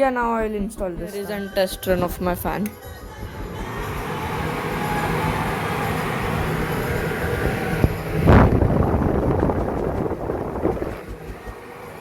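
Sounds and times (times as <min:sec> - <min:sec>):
low motor hum: 0:00.0 - 0:12.0
exhaust fan air rush: 0:01.9 - 0:12.0.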